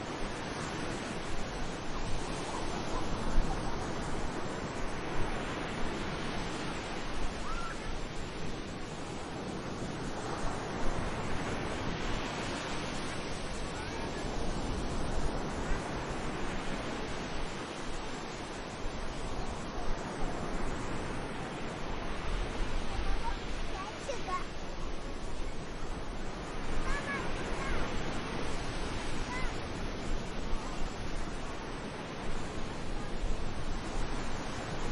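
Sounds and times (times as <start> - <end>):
sea waves washing onto beach: 0.0 - 34.9
wind buffeting microphone: 0.0 - 34.9.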